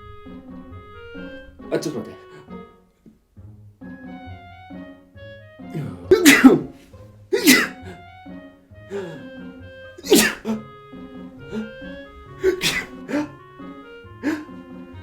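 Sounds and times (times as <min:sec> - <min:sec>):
light background music: 0:00.0 - 0:15.0
person sneezing loudly: 0:05.8 - 0:08.0, 0:08.9 - 0:09.3, 0:10.0 - 0:10.6, 0:11.5 - 0:11.8, 0:12.4 - 0:13.4, 0:14.2 - 0:14.6
breathy sounds: 0:08.9 - 0:09.4, 0:10.0 - 0:10.6, 0:11.4 - 0:13.4, 0:14.2 - 0:14.6.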